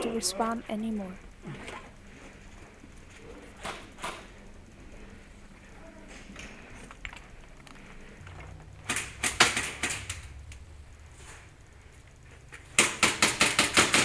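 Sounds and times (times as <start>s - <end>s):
airsoft rifles firing: 8.8s - 10.3s, 12.8s - 14.0s.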